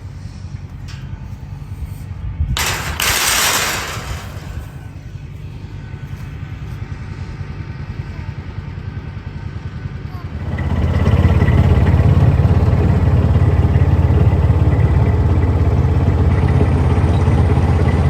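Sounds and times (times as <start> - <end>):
tractor diesel engine running: 0.0 - 18.0
loud crash: 2.6 - 5.0.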